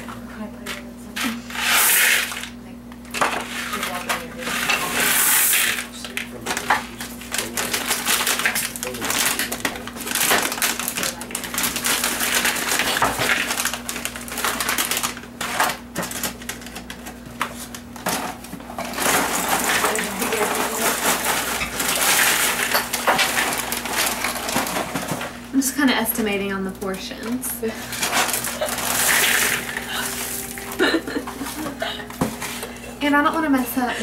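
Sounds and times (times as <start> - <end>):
snack pieces pouring into a bowl: 1.6 - 2.5, 4.8 - 16.9, 18.9 - 25.2, 27.9 - 31.6
packaging crinkling: 5.8 - 25.4, 27.8 - 32.9.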